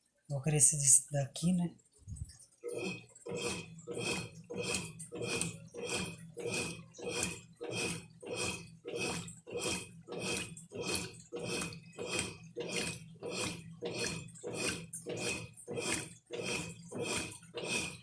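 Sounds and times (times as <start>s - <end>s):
washing machine agitating water: 0.6s - 18.0s.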